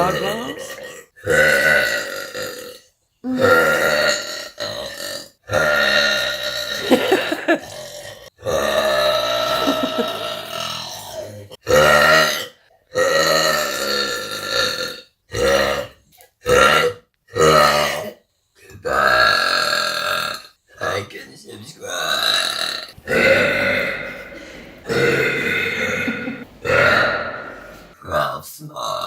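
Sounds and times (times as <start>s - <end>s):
woman belching loudly: 0.0s - 7.9s, 8.5s - 10.8s, 22.5s - 28.0s.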